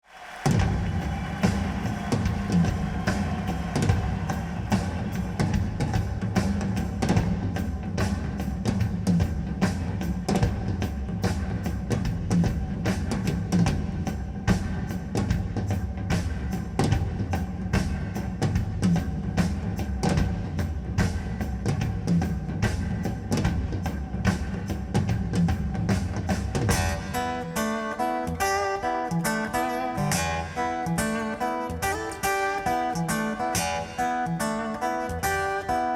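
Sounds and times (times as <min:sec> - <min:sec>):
drum beat with heavy bass: 0:00.5 - 0:28.6
picked guitar notes: 0:26.7 - 0:35.9.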